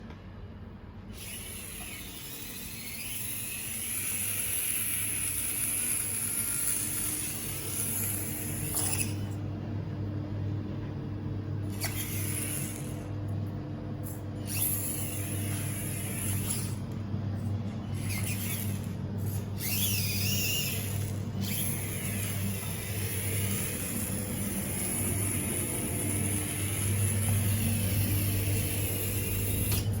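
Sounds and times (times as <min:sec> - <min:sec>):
rc car motor whining: 0:01.1 - 0:09.4, 0:11.7 - 0:13.0, 0:14.0 - 0:16.9, 0:17.8 - 0:30.0.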